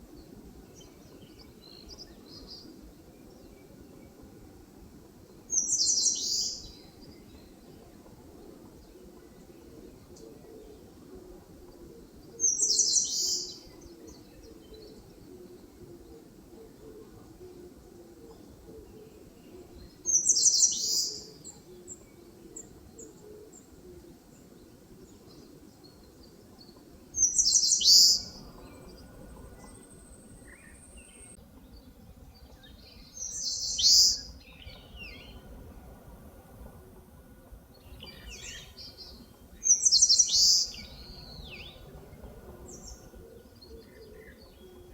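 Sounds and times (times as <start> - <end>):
warbler singing high song phrases: 5.5 - 7.5, 12.4 - 14.8, 19.8 - 22.0, 25.3 - 35.4, 37.8 - 42.0.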